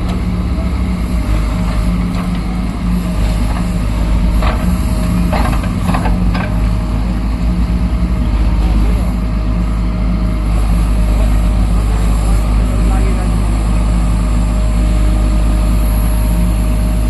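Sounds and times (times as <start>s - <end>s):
diesel engine running: 0.0s - 17.0s
clanks and scrapes: 3.2s - 6.6s.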